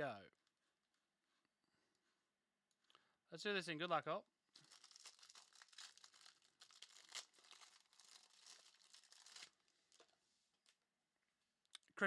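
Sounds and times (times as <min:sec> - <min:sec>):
plastic wrapper crinkling and tearing: 0:04.5 - 0:10.8.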